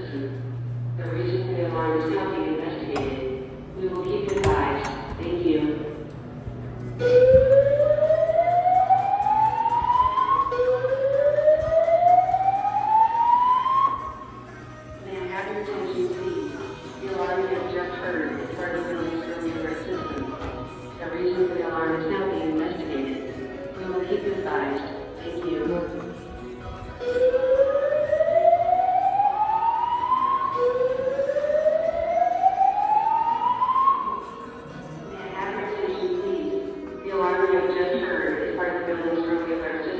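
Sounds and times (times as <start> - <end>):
fire alarm whoop tone: 7.0 - 14.4, 27.0 - 34.4.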